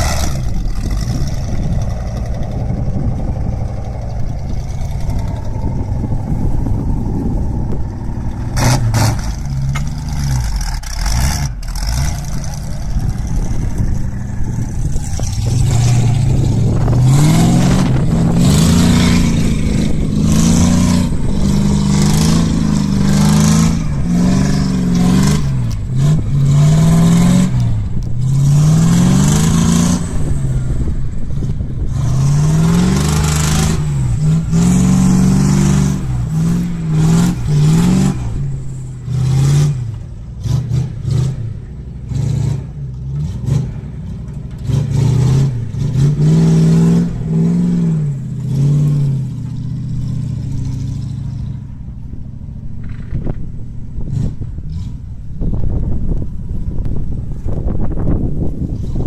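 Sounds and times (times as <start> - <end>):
wood chipper engine running: 0.0 - 40.3.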